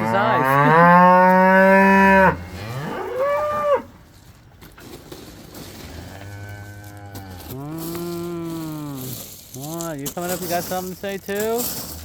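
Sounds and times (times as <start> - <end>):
cattle mooing: 0.0 - 3.9, 6.0 - 9.2.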